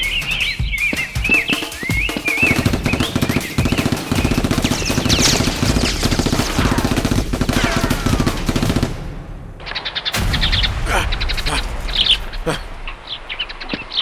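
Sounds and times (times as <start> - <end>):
rapid automatic gunfire: 2.4 - 9.2.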